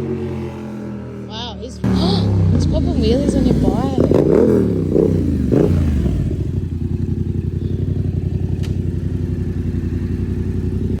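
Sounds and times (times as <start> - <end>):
motorcycle engine idling: 1.6 - 11.0
motorcycle engine throttle blip: 1.8 - 10.9.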